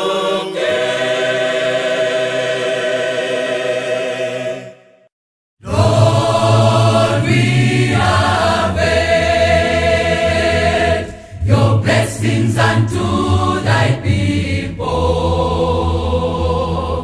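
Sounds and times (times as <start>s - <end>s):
choir singing: 0.0s - 17.0s
low bass accompaniment: 5.7s - 17.0s.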